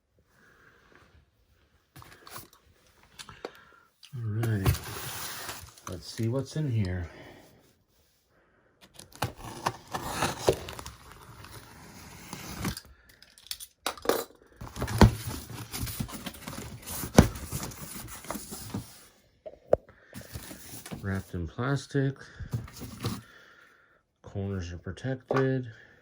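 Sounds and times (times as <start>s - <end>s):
cardboard tearing and rustling: 8.9s - 12.8s, 14.6s - 19.0s.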